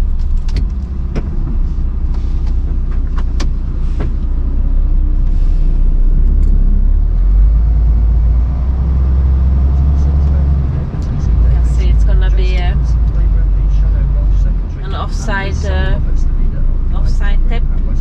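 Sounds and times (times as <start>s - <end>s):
sharp clicks and knocks: 0.0s - 1.6s, 2.4s - 4.3s
diesel lorry engine rumbling: 0.0s - 18.0s.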